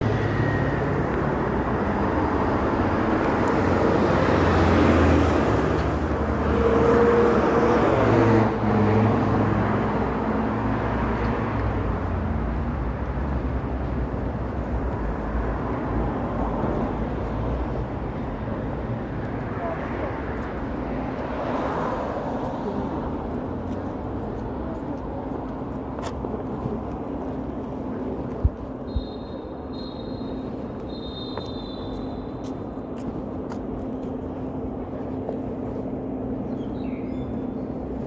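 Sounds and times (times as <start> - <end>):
traffic noise: 0.0 - 38.0.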